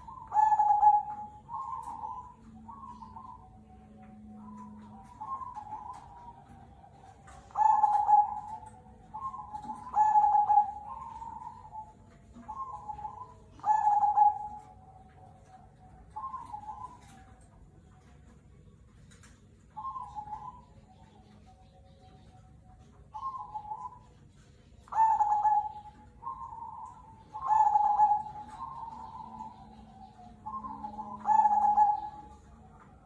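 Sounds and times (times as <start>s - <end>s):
dove cooing: 0.0s - 18.6s, 19.7s - 33.0s.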